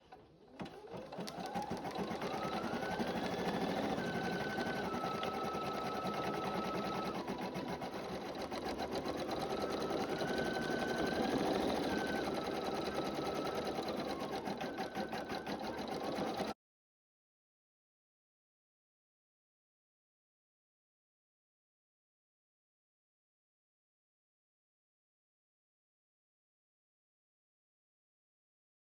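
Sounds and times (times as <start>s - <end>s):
embroidery machine stitching: 0.5s - 16.6s.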